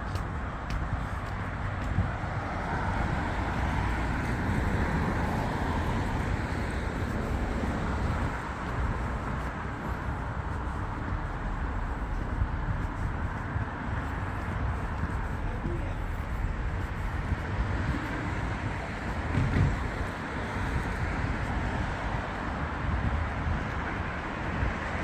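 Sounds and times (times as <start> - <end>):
distant city traffic: 0.0 - 25.0
river ships: 0.0 - 25.0.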